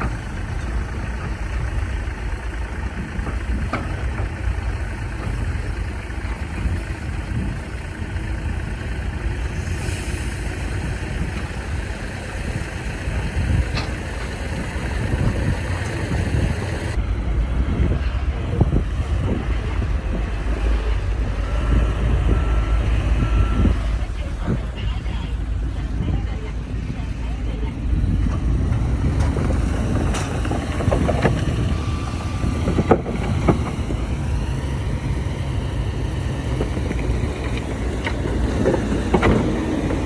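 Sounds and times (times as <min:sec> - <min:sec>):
diesel machinery rumbling: 0:00.0 - 0:40.0
reversing alarm beeping: 0:21.4 - 0:24.6.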